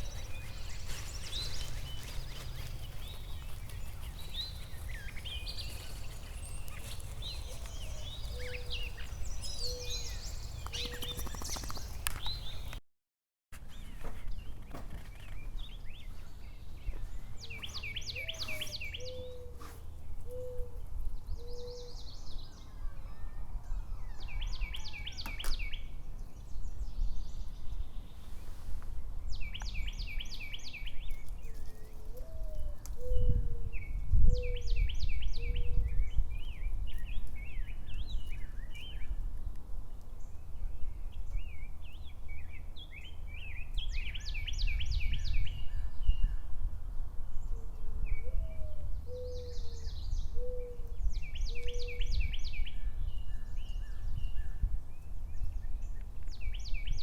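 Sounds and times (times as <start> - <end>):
bird trilling: 6.5 - 12.7
bird hooting: 7.4 - 11.4.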